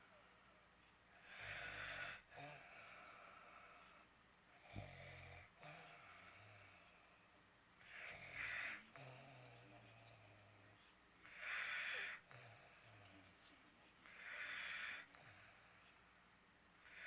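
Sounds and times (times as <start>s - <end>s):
man snoring faintly: 0.0s - 16.1s.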